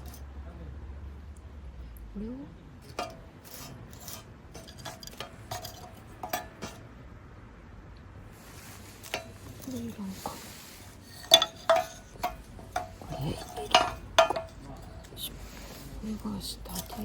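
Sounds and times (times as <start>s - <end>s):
metal utensil clinking on cookware: 0.0s - 0.2s, 2.8s - 6.8s, 8.6s - 17.0s.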